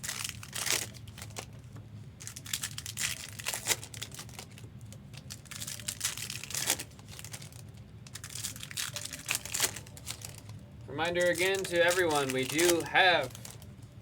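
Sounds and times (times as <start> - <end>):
wrappers crinkling and tearing: 0.0 - 14.0.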